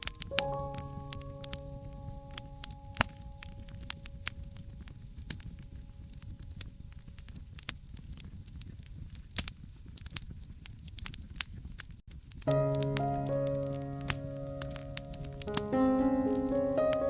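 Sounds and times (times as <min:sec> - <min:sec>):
soft music with held notes: 0:00.0 - 0:06.2, 0:12.5 - 0:17.0.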